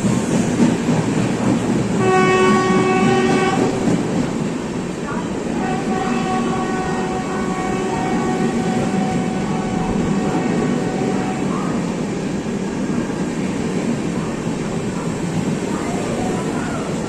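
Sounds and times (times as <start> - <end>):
train rumbling on track: 0.0 - 17.0
locomotive horn: 2.0 - 3.8, 5.6 - 11.6.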